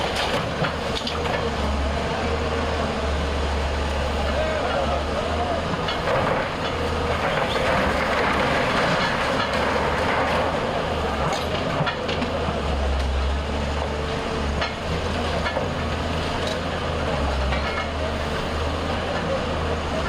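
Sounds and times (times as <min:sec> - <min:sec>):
diesel engine rumbling: 0:00.0 - 0:20.0
machinery clatter: 0:04.2 - 0:20.0.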